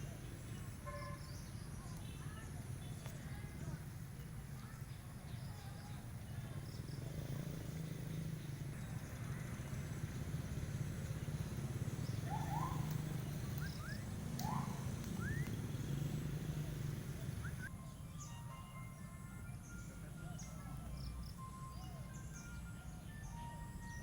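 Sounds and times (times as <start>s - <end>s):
rising bird chirps: 6.6s - 18.6s.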